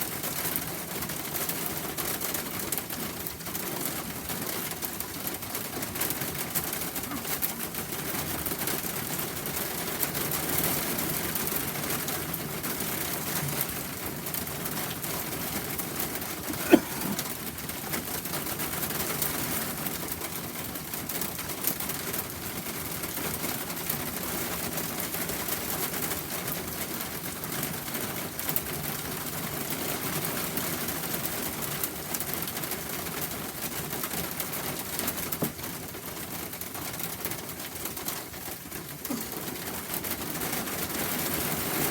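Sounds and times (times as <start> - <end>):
steady rain falling: 0.0 - 41.9.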